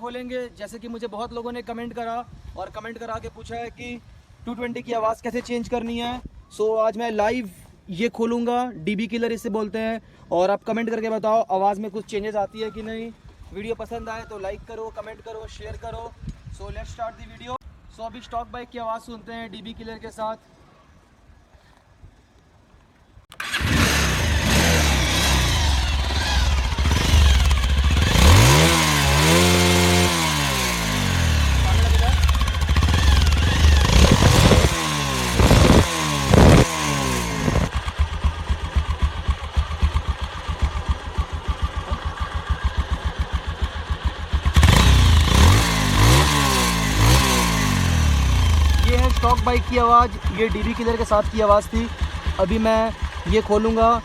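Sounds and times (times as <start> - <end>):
motorcycle engine starting and revving: 23.3 - 54.0.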